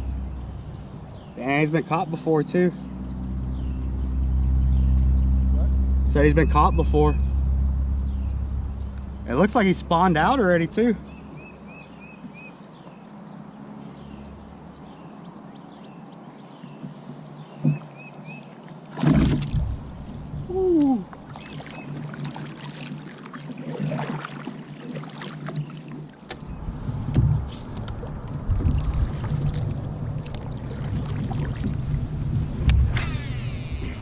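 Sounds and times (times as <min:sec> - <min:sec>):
low rumble: 0:02.7 - 0:11.9, 0:19.1 - 0:21.5, 0:26.4 - 0:34.0
water splashing and sloshing: 0:08.6 - 0:34.0.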